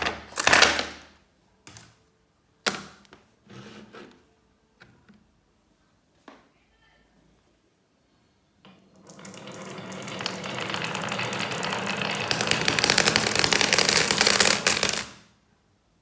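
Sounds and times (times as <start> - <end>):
marbles rattling down a track: 8.9 - 15.2.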